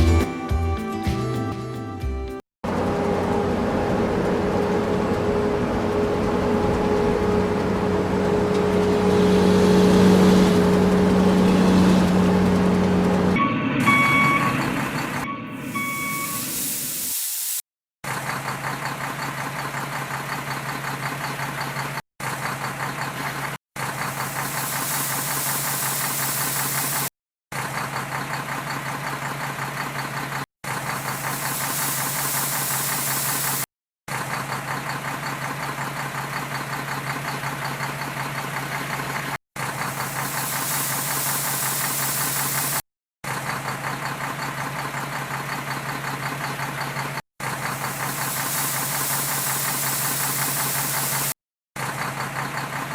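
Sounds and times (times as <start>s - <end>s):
diesel engine clattering hum: 2.6s - 15.4s, 34.2s - 40.5s, 43.3s - 48.3s, 51.8s - 52.9s
loud hiss: 15.7s - 17.6s, 24.1s - 27.1s, 30.9s - 33.6s, 39.8s - 42.8s, 47.6s - 51.4s.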